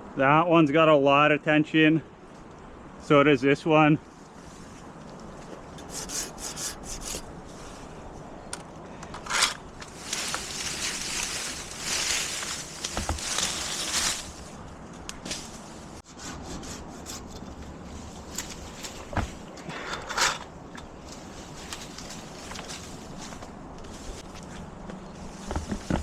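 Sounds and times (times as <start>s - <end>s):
wood scraping and rubbing: 5.8s - 7.3s, 25.2s - 26.0s.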